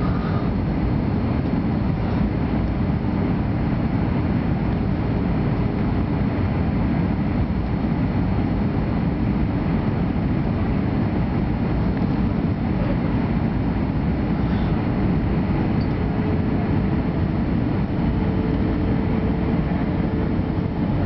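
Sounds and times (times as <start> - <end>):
faint hum and whine: 0.0 - 21.0
jet engines and airflow rushing: 0.0 - 21.0.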